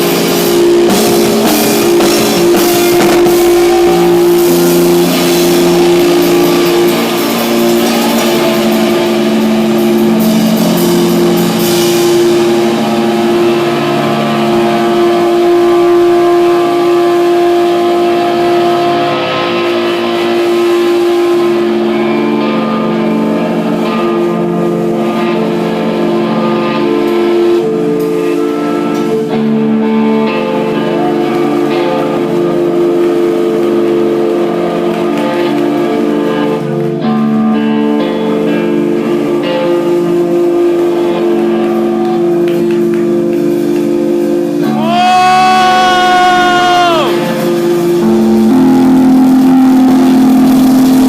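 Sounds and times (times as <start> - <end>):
cymbal wash: 0.0 - 29.2
electric guitar notes ringing: 0.0 - 51.0
live band music: 0.0 - 51.0.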